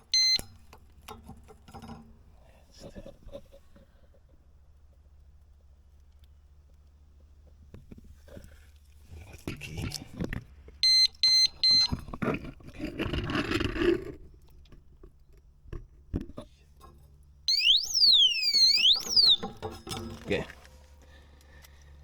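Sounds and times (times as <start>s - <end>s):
short high beeps: 0.1s - 0.4s, 10.8s - 11.9s, 17.5s - 19.5s
siren sweeping in pitch: 17.5s - 19.5s.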